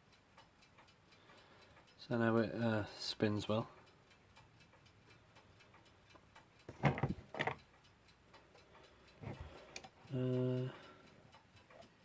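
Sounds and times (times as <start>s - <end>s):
mechanical clock ticking: 0.0s - 12.0s
handling knocks: 6.7s - 7.6s.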